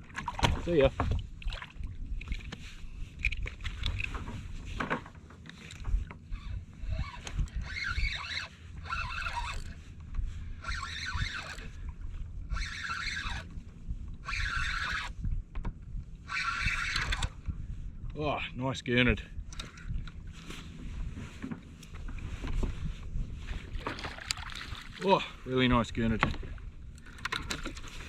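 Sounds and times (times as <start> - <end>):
low rumble of wind and water: 0.0 - 28.0
fishing reel winding: 6.9 - 9.8, 10.6 - 11.8, 12.5 - 13.5, 14.3 - 15.1, 16.3 - 17.3.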